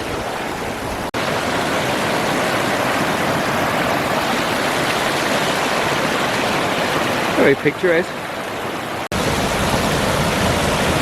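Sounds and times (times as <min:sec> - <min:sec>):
mountain stream rushing over rocks: 0:00.0 - 0:11.0.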